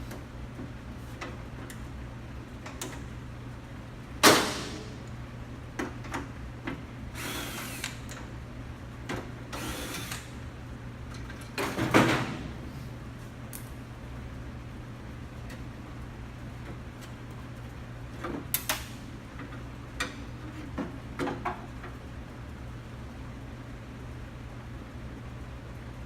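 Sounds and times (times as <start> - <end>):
power tool whirring: 7.2 - 8.0, 9.5 - 10.3.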